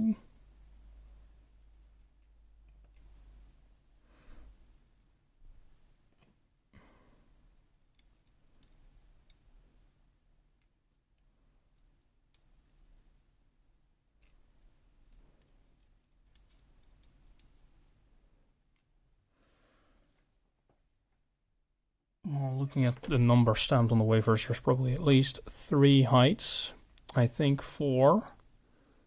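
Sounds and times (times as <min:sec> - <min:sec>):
small metal clicks: 0:07.7 - 0:09.5, 0:10.6 - 0:12.9, 0:14.2 - 0:17.7.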